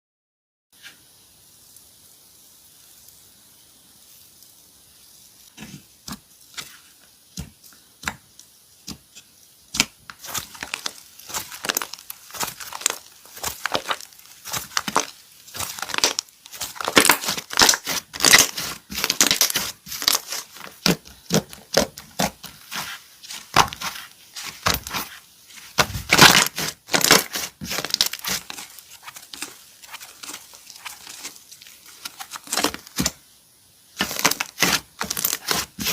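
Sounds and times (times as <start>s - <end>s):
slime crackling pops: 9.7s - 25.1s, 25.8s - 29.5s.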